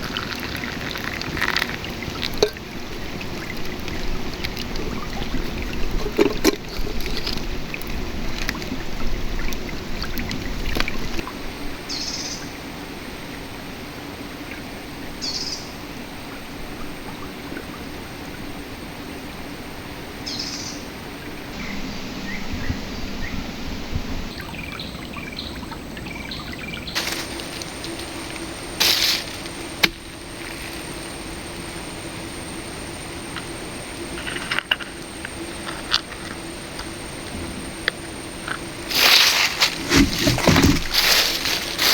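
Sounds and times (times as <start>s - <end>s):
river flowing: 27.0s - 41.9s.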